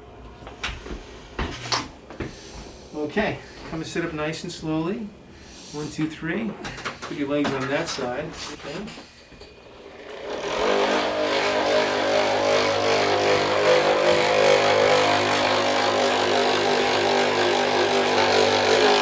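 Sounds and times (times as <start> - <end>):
electric motor running: 9.6 - 19.0.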